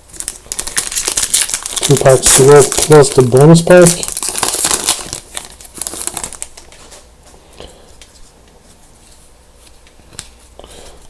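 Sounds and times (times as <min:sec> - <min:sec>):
wrapper crinkling and tearing: 0:00.0 - 0:07.1.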